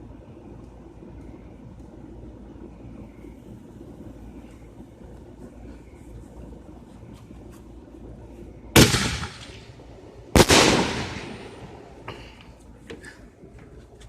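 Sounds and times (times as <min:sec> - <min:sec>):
firework bangs with rumble: 0:08.8 - 0:09.7, 0:10.3 - 0:11.9.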